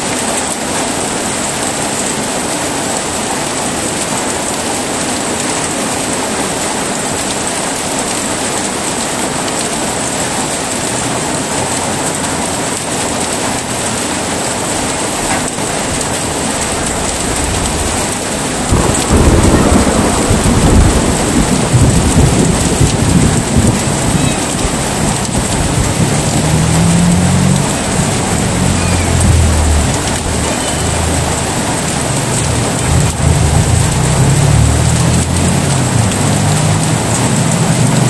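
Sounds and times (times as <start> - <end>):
heavy rain: 0.0 - 38.0
low roll of thunder: 15.4 - 37.5.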